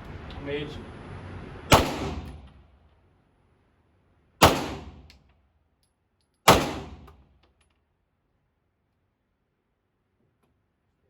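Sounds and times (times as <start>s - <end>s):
gunshots with echo: 1.7s - 2.4s, 4.4s - 5.0s, 6.5s - 7.1s.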